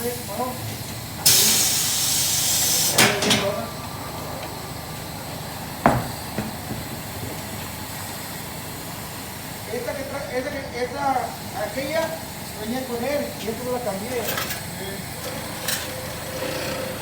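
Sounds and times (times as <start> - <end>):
compressed air hissing: 0.0 - 17.0
knocks on tire equipment: 5.8 - 7.4.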